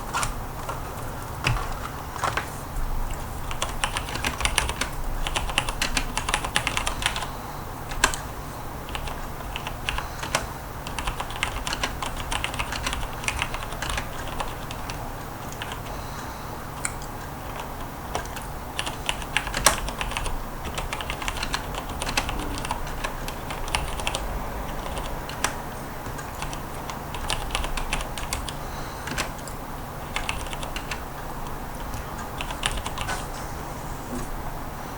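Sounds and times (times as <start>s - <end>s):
mechanical keyboard typing: 0.0s - 2.5s, 3.1s - 15.9s, 16.7s - 33.2s.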